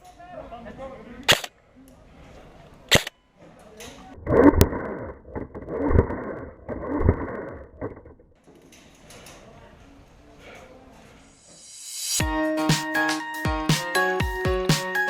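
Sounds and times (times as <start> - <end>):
sharp click: 1.3 - 1.5, 2.9 - 3.2.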